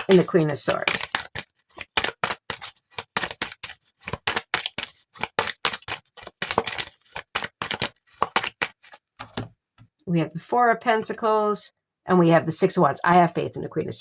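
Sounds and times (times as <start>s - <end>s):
playing cards being shuffled: 0.0s - 9.5s.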